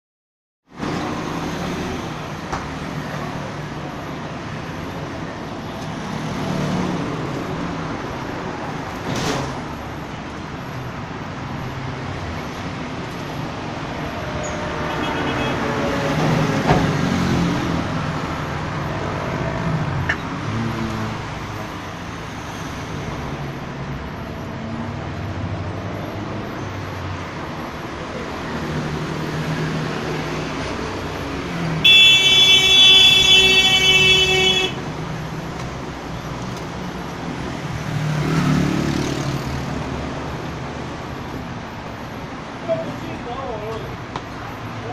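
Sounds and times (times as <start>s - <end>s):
road traffic: 0.6s - 44.9s
long horn blast: 14.0s - 16.4s.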